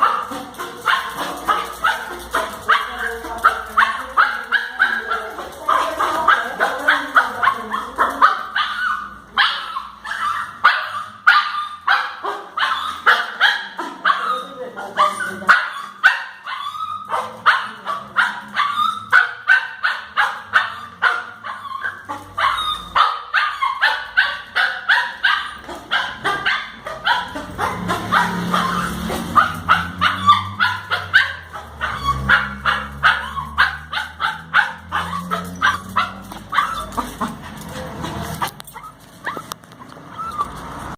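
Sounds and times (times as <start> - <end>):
dog barking and yipping: 0.0 - 40.9.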